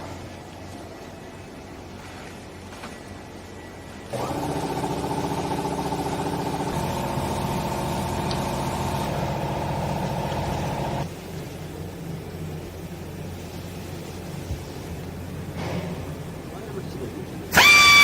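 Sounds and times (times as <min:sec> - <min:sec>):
pump whine: 0:00.0 - 0:18.0
hydraulic motor humming: 0:04.1 - 0:11.1, 0:17.5 - 0:18.0.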